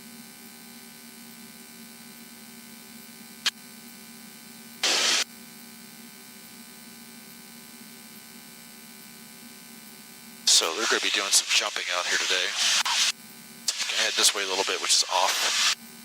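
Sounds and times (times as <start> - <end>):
radio static burst: 4.8 - 5.2, 10.5 - 13.1, 13.7 - 15.8
aircraft engine drone: 10.5 - 13.1.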